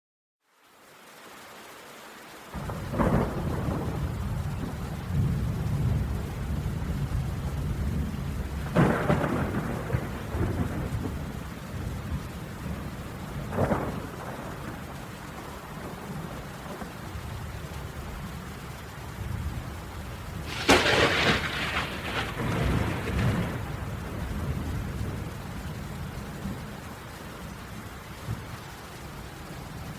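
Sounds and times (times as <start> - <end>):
steady rain: 0.4 - 29.9
sharp thunderclaps: 2.6 - 15.0, 20.4 - 25.6
rolling thunder: 2.6 - 27.2.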